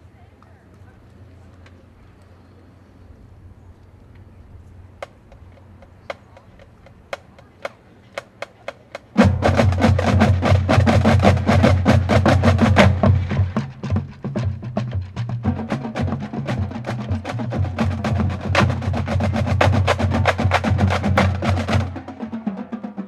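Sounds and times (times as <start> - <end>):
snares and bass drums playing: 9.1 - 23.0.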